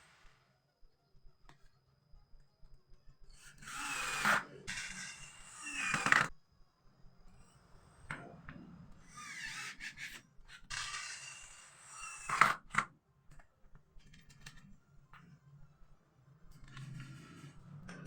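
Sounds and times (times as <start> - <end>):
power tool spinning up: 3.5 - 6.3.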